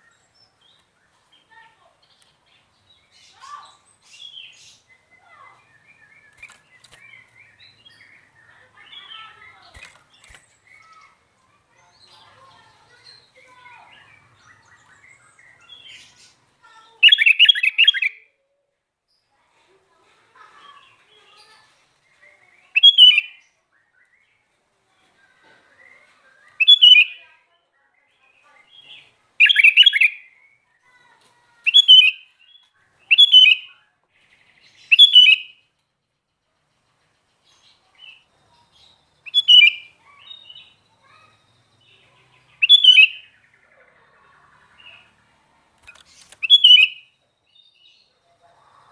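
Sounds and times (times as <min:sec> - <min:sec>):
soft bird twittering: 0:00.0 - 0:18.2, 0:20.6 - 0:24.5, 0:25.2 - 0:48.9
sharp clicks: 0:06.3 - 0:07.2, 0:09.6 - 0:10.6, 0:45.7 - 0:46.6
bird singing chirps and whistles: 0:17.0 - 0:18.2, 0:22.7 - 0:24.3, 0:25.8 - 0:27.2, 0:28.7 - 0:30.3, 0:31.7 - 0:33.7, 0:34.7 - 0:35.6, 0:39.2 - 0:42.0, 0:42.6 - 0:43.4, 0:46.4 - 0:48.0
bird singing bubbling phrase: 0:42.6 - 0:43.3.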